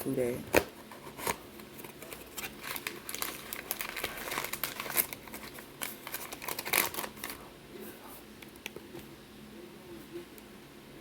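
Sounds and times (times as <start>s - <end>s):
packaging crinkling: 1.1s - 7.4s.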